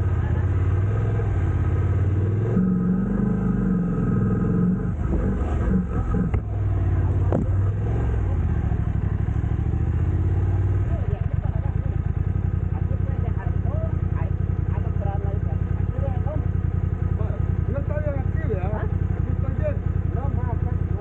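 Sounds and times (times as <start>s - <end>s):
vehicle engine running: 0.0s - 21.0s.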